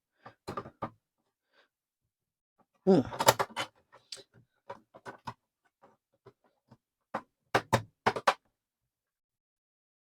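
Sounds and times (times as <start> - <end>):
clicks and knocks of parts: 3.1 - 8.5.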